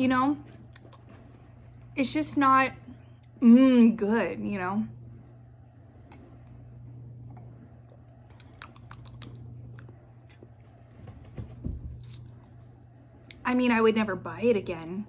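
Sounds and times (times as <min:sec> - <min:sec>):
steady low hum: 0:00.0 - 0:15.0
wet chewing and mouth clicks: 0:00.5 - 0:01.2, 0:07.9 - 0:10.6.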